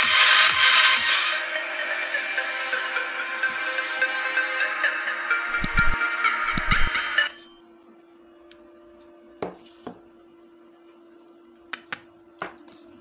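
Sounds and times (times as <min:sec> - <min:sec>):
music through a speaker: 0:00.0 - 0:06.7
faint steady hum: 0:05.6 - 0:13.0.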